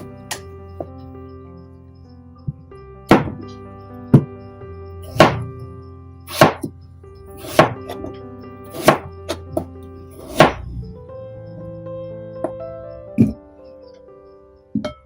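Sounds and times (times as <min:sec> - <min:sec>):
soft background music: 0:00.0 - 0:15.0
knife chopping on cutting board: 0:03.1 - 0:03.4, 0:05.1 - 0:05.5, 0:06.3 - 0:06.7, 0:07.4 - 0:08.1, 0:08.7 - 0:10.7.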